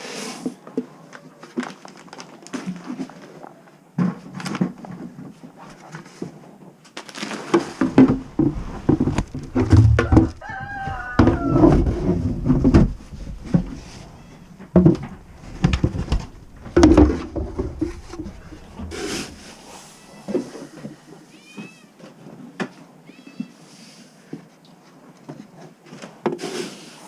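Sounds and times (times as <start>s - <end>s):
cat meowing: 13.8s - 14.8s, 19.6s - 22.0s, 23.0s - 23.7s
knocks and clatter of gear: 14.5s - 19.5s.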